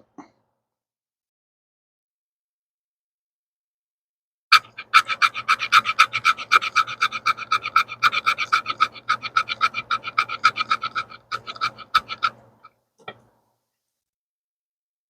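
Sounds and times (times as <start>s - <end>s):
knife spine scraping wood: 4.6s - 12.7s.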